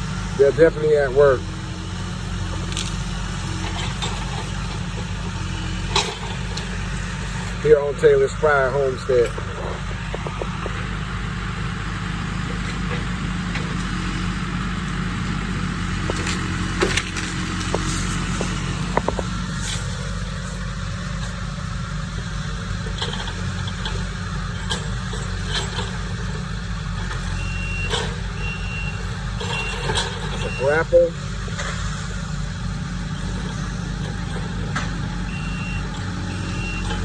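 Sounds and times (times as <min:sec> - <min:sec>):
diesel engine running: 0:00.0 - 0:37.0
sharp cracks and knocks: 0:16.0 - 0:19.3
reversing alarm beeping: 0:27.0 - 0:31.2, 0:35.2 - 0:37.0.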